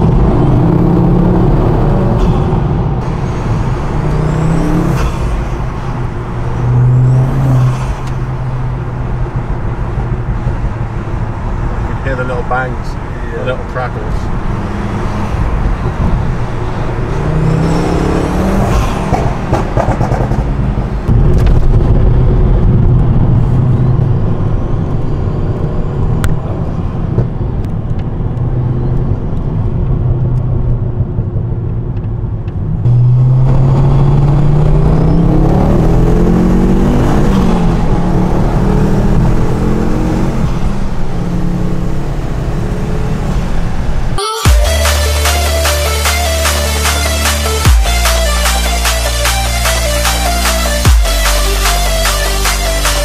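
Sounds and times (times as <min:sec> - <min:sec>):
exhaust bangs and crackles: 0:00.0 - 0:24.9
car engine accelerating hard: 0:00.0 - 0:53.0.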